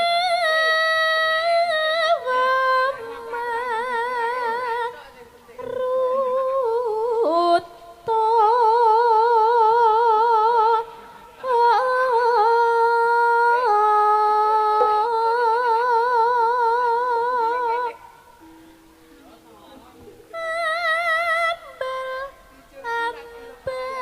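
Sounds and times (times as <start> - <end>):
high melody with vibrato: 14.6 - 24.0.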